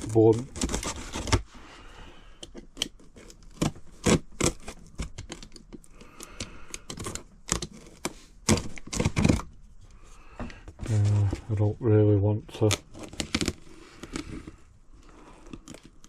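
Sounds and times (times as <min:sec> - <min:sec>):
cardboard scraping and rustling: 0:00.0 - 0:01.7, 0:10.7 - 0:11.7, 0:12.5 - 0:14.7.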